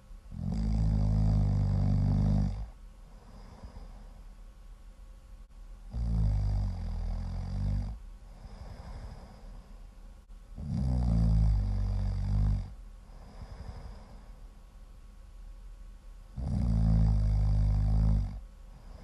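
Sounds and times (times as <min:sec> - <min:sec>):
quiet breathing: 0:00.0 - 0:04.6, 0:05.4 - 0:15.0, 0:16.2 - 0:19.0
loud rattling snores: 0:00.3 - 0:03.9, 0:05.9 - 0:09.4, 0:10.6 - 0:14.2, 0:16.4 - 0:19.0.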